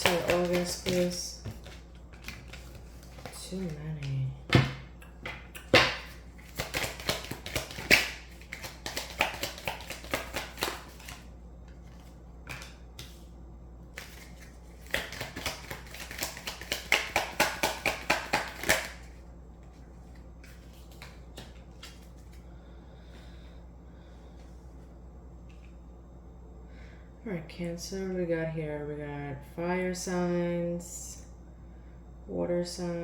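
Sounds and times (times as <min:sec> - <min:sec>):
cards being shuffled: 0:00.0 - 0:13.3, 0:13.9 - 0:22.4
cards snapping: 0:05.0 - 0:11.2, 0:14.0 - 0:19.0.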